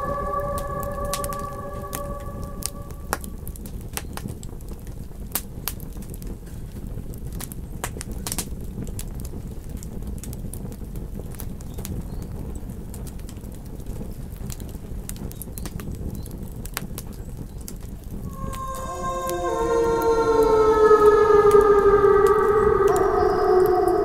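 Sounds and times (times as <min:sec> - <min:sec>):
wolf howl: 0:00.0 - 0:03.6, 0:18.3 - 0:24.0.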